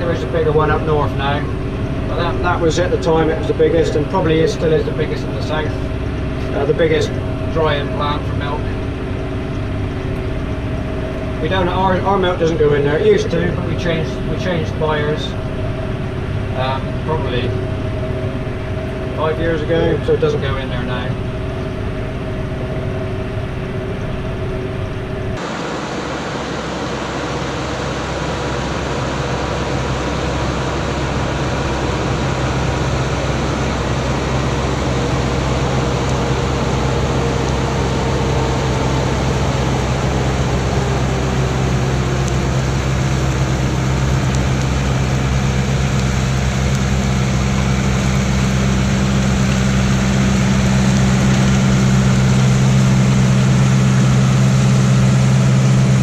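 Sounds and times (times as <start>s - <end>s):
faint falling whine: 0.0s - 56.0s
tractor engine running: 0.0s - 56.0s.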